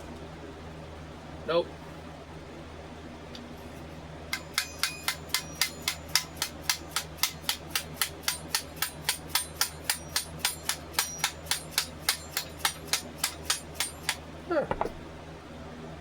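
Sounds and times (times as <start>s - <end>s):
hammer tapping on metal: 4.3s - 14.9s.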